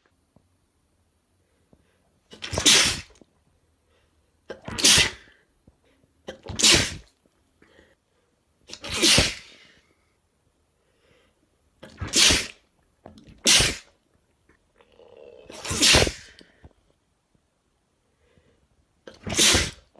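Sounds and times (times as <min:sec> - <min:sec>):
man sneezing: 0:02.4 - 0:03.2, 0:04.5 - 0:05.3, 0:06.3 - 0:07.1, 0:08.7 - 0:09.7, 0:11.9 - 0:12.6, 0:13.4 - 0:13.9, 0:15.4 - 0:16.4, 0:19.1 - 0:19.9.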